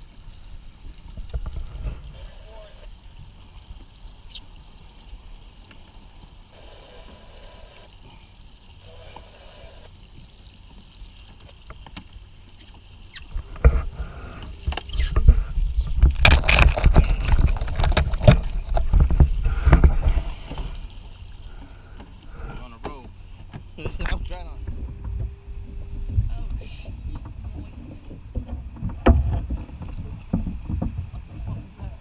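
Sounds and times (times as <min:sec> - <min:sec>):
handling knocks and rumbling: 0:13.3 - 0:32.0.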